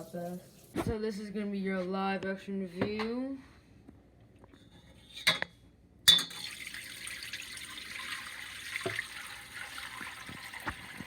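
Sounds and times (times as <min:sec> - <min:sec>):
broth pouring through a strainer: 0:06.4 - 0:11.0.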